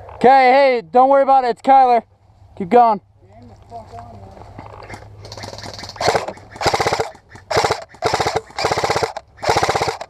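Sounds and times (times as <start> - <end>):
airsoft gun bursts: 5.3 - 10.0.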